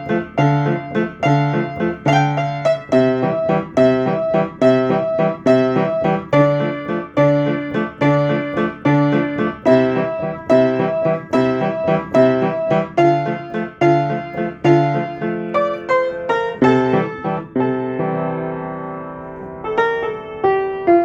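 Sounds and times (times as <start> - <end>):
piano playing repeating riff: 0.0 - 21.0.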